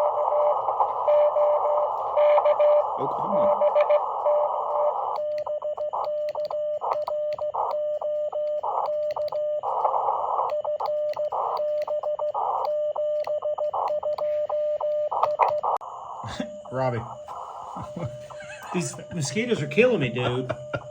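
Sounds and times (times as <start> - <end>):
radio receiver hiss: 0.0 - 5.3, 15.2 - 20.9
morse code tone: 0.0 - 9.6, 16.4 - 20.9.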